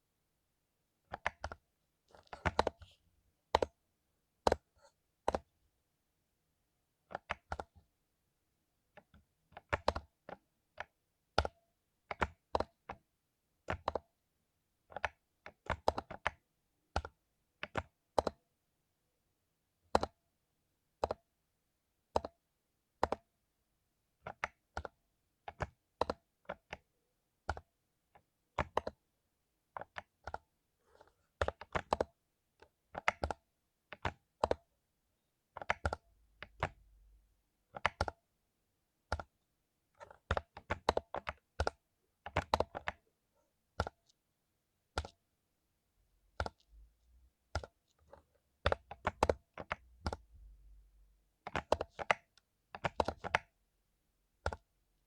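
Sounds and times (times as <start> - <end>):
mechanical keyboard typing: 28.6 - 29.0, 29.8 - 32.2, 32.9 - 34.6, 35.6 - 37.2, 37.8 - 38.2, 40.0 - 43.1, 46.3 - 53.6, 54.4 - 54.7.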